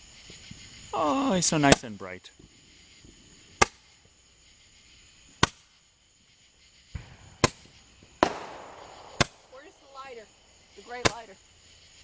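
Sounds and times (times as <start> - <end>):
fireworks bangs: 0.2 - 4.2, 6.8 - 11.5.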